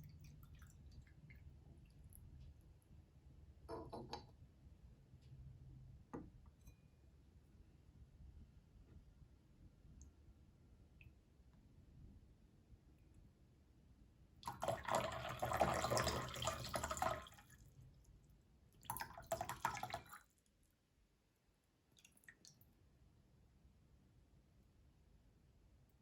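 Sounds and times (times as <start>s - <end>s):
water pouring from teapot: 14.4s - 17.5s, 18.8s - 20.2s.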